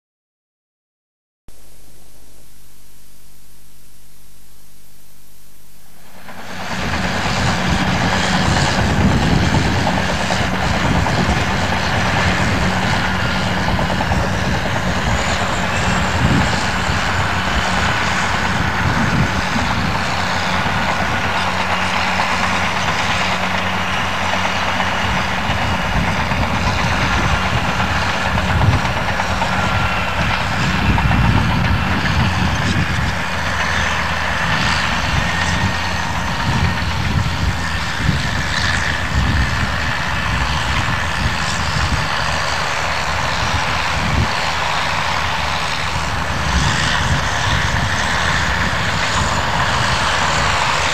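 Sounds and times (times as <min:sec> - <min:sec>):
thin whining note: 0:01.5 - 0:06.7
bulldozer diesel engine running: 0:01.5 - 0:50.9.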